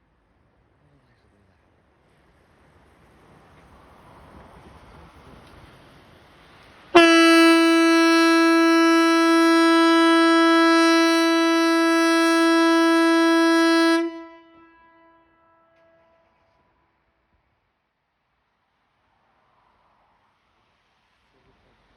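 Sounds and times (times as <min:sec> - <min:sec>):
warning siren steady blast: 0:07.0 - 0:15.6.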